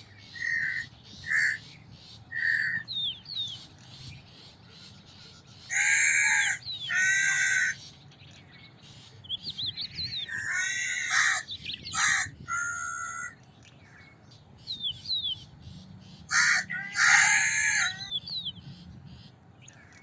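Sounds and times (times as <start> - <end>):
crow cawing: 0.4 - 1.6, 5.7 - 7.8, 10.3 - 13.4, 16.3 - 18.1.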